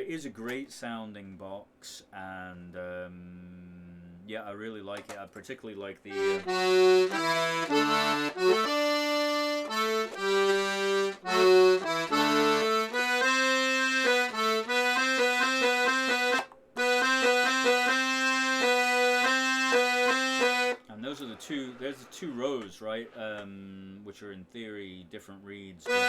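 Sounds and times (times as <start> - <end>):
button accordion playing tune: 6.1 - 22.3.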